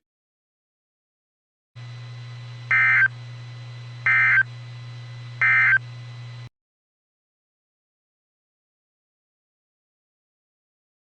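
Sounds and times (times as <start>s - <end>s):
steady low hum: 1.8s - 6.5s
digital data squawks: 5.4s - 5.8s.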